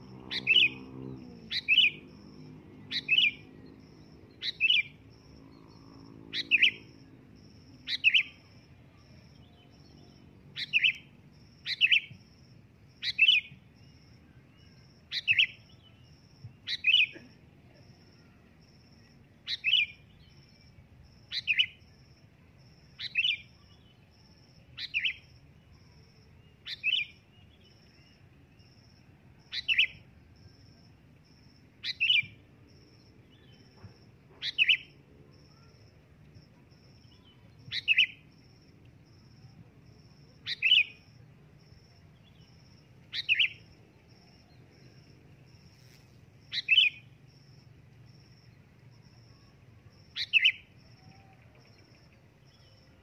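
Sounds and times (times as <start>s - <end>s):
bulbul calling: 0.1s - 0.9s, 1.5s - 3.5s, 4.4s - 5.0s, 6.3s - 6.9s, 33.8s - 34.9s, 37.1s - 38.2s, 43.1s - 43.6s, 46.5s - 47.1s, 50.2s - 51.2s.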